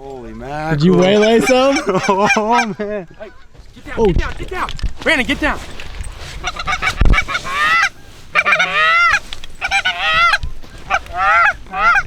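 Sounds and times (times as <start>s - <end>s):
geese honking and clucking: 0.3s - 3.6s, 6.3s - 12.0s.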